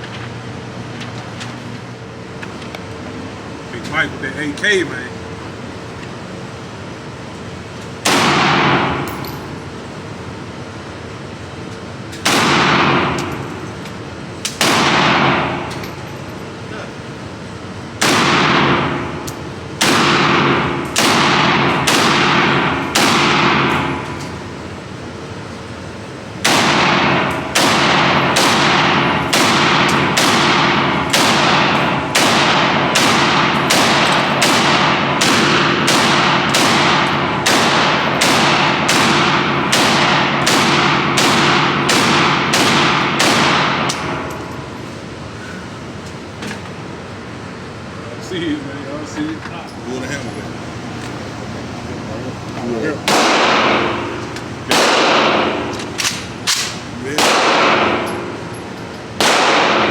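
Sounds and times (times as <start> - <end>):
rifle shots with ringing echo: 8.0 - 9.2, 12.2 - 13.4, 14.6 - 16.1, 18.0 - 19.2, 19.8 - 24.2, 26.4 - 44.7, 53.1 - 58.5, 59.2 - 59.9.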